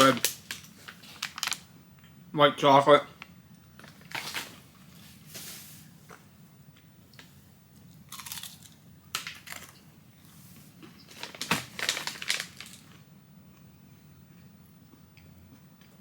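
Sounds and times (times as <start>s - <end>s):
crunching while eating: 7.8s - 13.7s.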